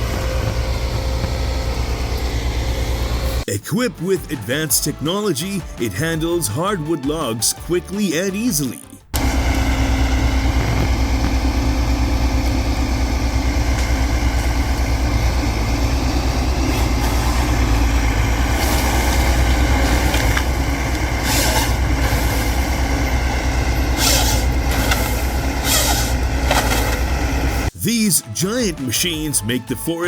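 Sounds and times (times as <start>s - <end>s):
diesel engine running: 0.0s - 3.5s, 9.1s - 28.0s.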